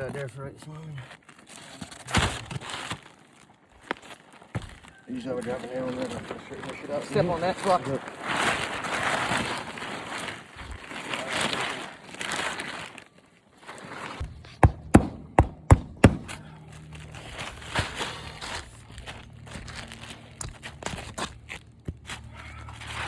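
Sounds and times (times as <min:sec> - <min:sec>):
tarp and shingles rustling: 0:00.0 - 0:23.0
hammer striking nail: 0:14.4 - 0:16.4.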